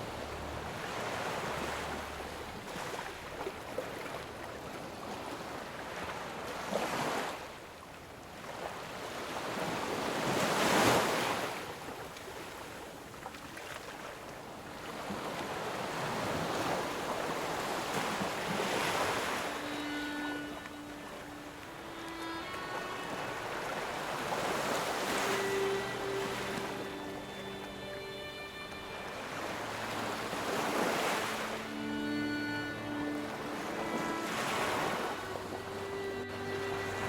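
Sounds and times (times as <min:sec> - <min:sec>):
ocean waves breaking: 0:00.0 - 0:37.0.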